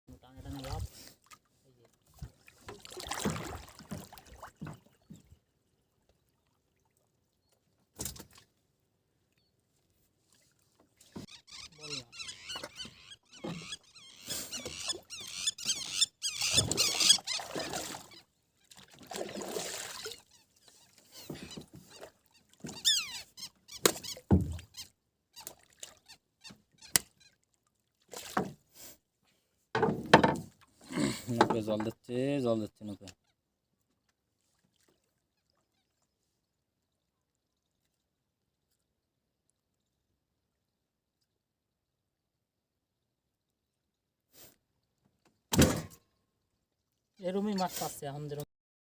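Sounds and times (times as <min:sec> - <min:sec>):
water splashing around boat: 0:00.3 - 0:28.9, 0:34.0 - 0:38.8
squeaks and knocks: 0:11.1 - 0:18.2, 0:20.0 - 0:25.5.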